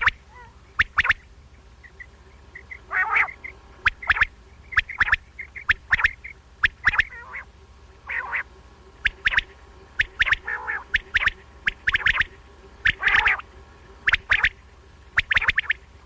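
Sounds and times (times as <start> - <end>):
faint steady hum: 0.0 - 16.0
quail calling: 0.0 - 16.0.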